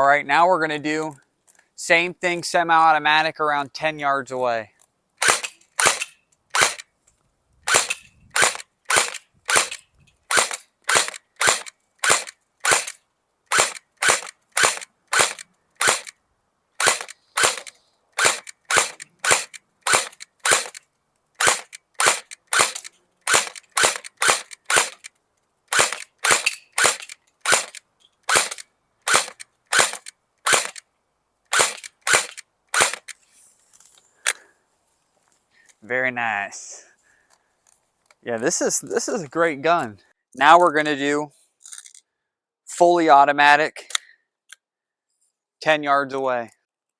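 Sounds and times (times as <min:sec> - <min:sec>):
airsoft rifle single shots: 0:05.2 - 0:06.8, 0:07.7 - 0:16.1, 0:16.8 - 0:20.8, 0:21.4 - 0:25.0, 0:25.7 - 0:30.8, 0:31.5 - 0:33.1.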